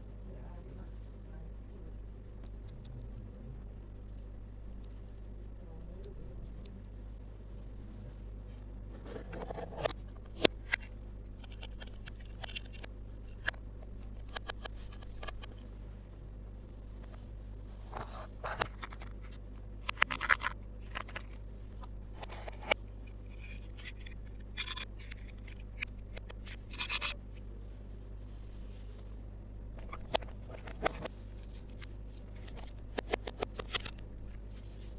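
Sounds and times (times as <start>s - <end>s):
steady low hum: 0.0s - 34.9s.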